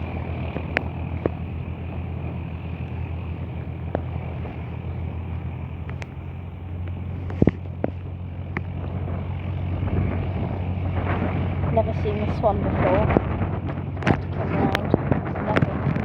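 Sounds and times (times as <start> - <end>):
aircraft engine droning: 0.0 - 16.0
sharp clicks: 5.3 - 6.2.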